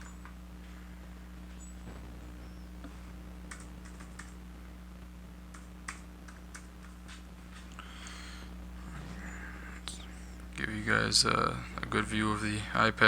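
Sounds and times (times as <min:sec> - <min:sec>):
keyboard keys clicking: 0:03.5 - 0:04.4, 0:05.5 - 0:07.2.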